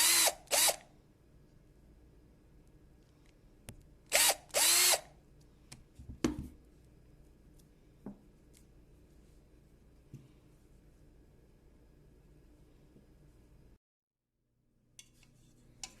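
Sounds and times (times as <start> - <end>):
power tool motor spinning: 0.0 - 0.8, 4.1 - 5.1
knock: 6.1 - 6.6.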